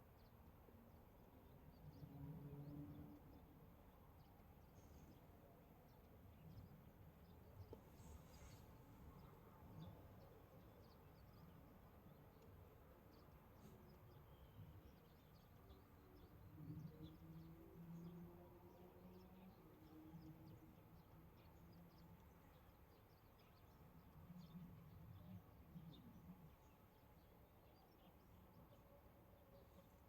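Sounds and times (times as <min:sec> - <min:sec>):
faint low murmur: 0:00.1 - 0:30.0.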